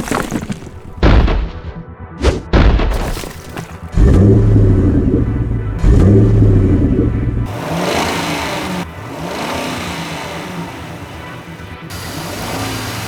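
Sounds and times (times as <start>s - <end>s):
booming crashes: 0.0s - 8.3s
background music: 0.4s - 13.0s
loud low drone: 3.8s - 12.4s.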